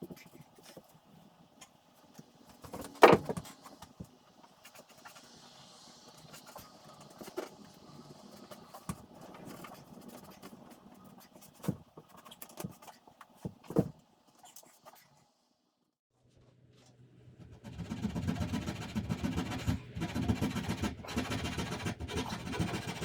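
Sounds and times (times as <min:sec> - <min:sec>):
knocks and clunks on wood: 0:02.7 - 0:03.5.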